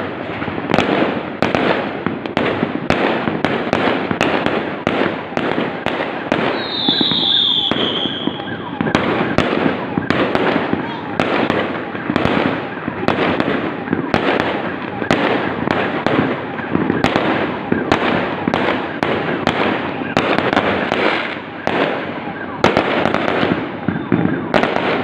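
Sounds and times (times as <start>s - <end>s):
fireworks banging: 0.0s - 25.0s
fireworks crackling: 0.0s - 25.0s.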